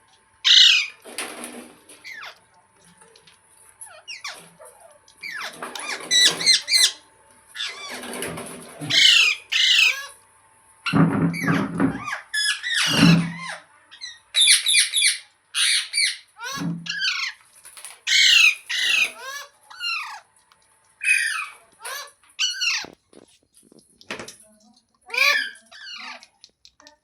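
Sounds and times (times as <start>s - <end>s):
parrot squawking: 0.4s - 1.0s, 2.0s - 2.4s, 3.9s - 10.2s, 10.9s - 17.4s, 18.0s - 20.3s, 21.0s - 23.0s, 25.1s - 26.4s.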